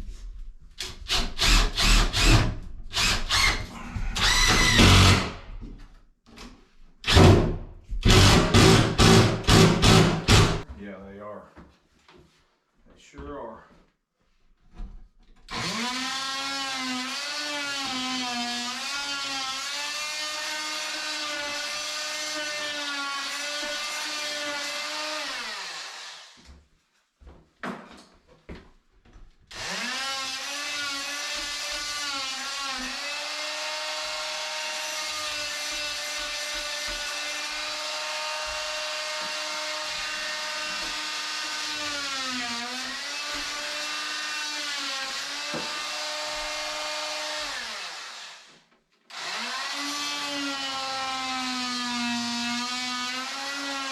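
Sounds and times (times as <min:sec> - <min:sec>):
electric drill whining: 0:01.1 - 0:05.5, 0:15.5 - 0:26.4, 0:29.5 - 0:53.8.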